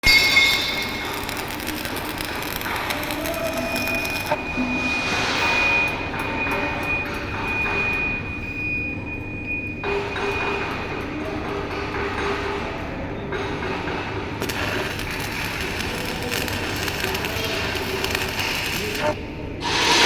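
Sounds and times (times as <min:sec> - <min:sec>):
mechanical noise: 0:00.0 - 0:11.0, 0:14.1 - 0:20.0.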